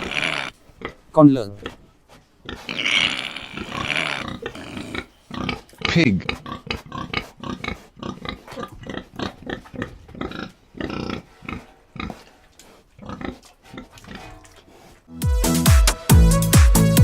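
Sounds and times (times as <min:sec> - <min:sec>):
pig grunting: 0:00.0 - 0:01.0, 0:01.6 - 0:15.1
electronic beat music: 0:15.2 - 0:17.0.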